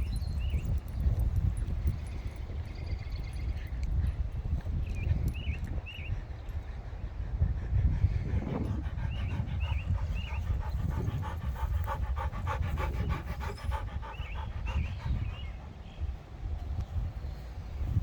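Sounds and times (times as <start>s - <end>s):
dog panting: 6.5s - 16.3s.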